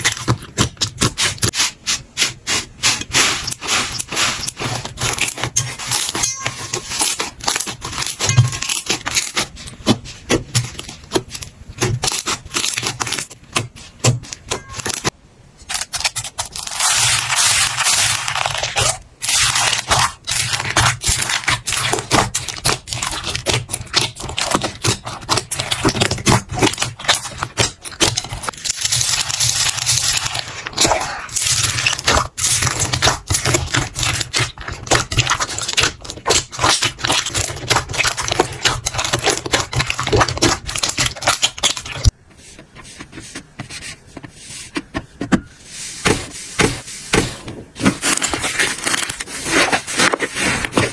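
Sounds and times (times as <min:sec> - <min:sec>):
slime crackling and popping: 0:15.7 - 0:42.1.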